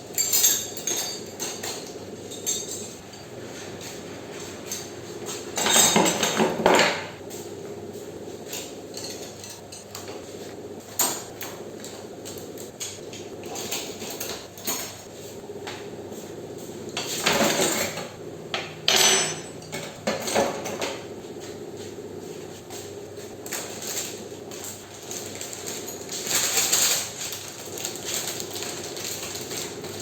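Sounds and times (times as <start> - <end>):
dishes and pots clinking: 0.1 - 3.3, 4.4 - 7.2, 8.5 - 10.3, 16.9 - 21.1
dishes clattering: 5.5 - 7.1, 17.0 - 21.1.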